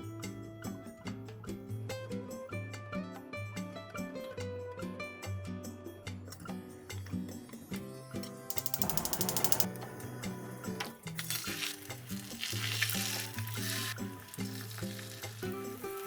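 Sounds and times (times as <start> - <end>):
background music: 0.0 - 16.0
fast clicking: 8.5 - 9.7
egg sizzling in a pan: 11.1 - 16.0.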